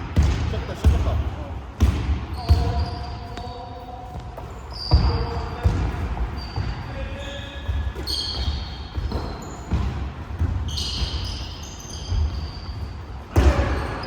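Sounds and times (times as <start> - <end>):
sneakers squeaking on court: 0.0 - 14.0
basketball bouncing on hardwood: 4.9 - 6.7, 7.7 - 11.4.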